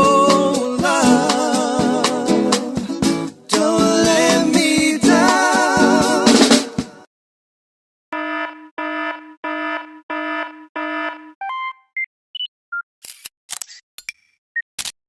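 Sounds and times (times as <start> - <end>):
sharp clicks: 13.0 - 15.0.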